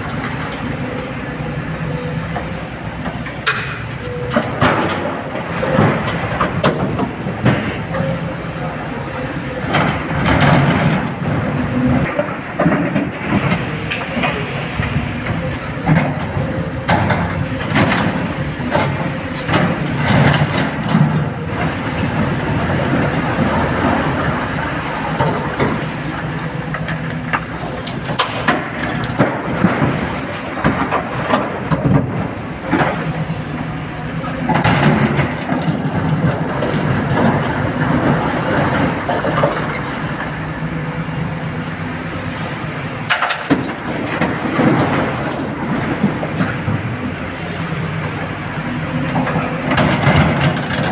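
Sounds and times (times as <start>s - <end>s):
diesel engine under load: 0.0s - 50.9s.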